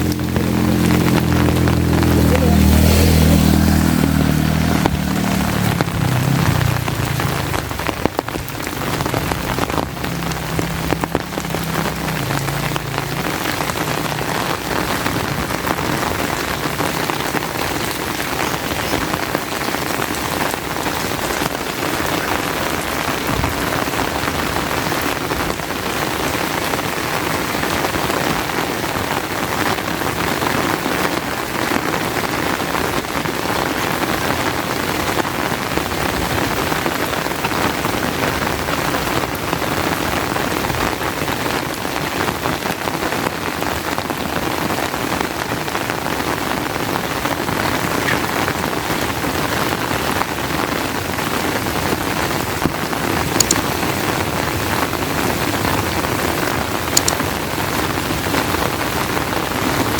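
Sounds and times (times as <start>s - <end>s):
vehicle engine: 0.0s - 26.6s
rain falling: 0.0s - 59.9s.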